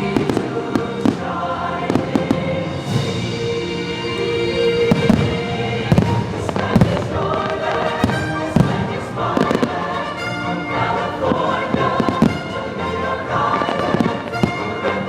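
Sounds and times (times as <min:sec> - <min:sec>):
fireworks show music: 0:00.0 - 0:15.0
fireworks bangs: 0:04.9 - 0:09.8.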